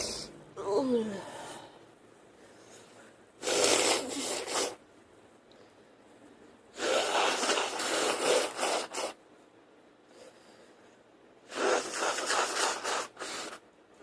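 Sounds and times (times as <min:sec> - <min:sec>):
woman blowing her nose: 0:03.4 - 0:04.8, 0:06.7 - 0:09.2, 0:11.5 - 0:13.6.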